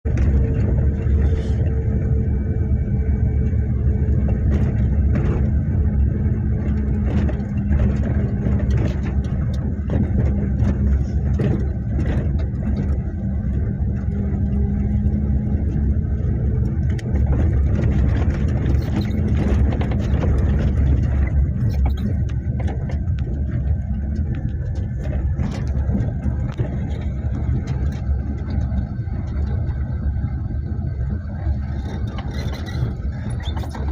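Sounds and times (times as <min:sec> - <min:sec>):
vehicle engine running: 0:00.0 - 0:33.9
faint clicks and knocks: 0:03.4 - 0:30.2.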